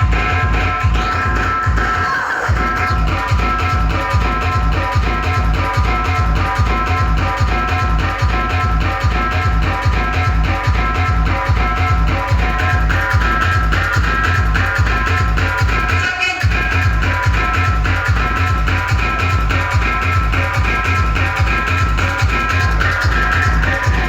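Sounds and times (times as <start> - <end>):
heavy bass beat: 0.0 - 24.0
sustained synth melody: 22.2 - 24.0.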